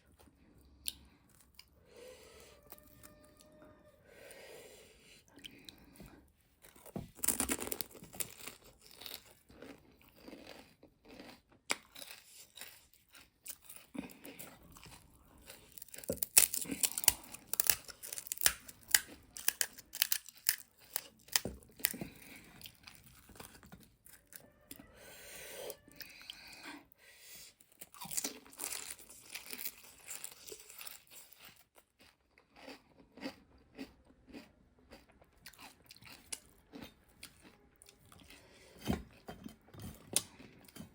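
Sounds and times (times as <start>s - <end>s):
crunchy snack being chewed: 6.6s - 24.9s, 27.5s - 40.9s.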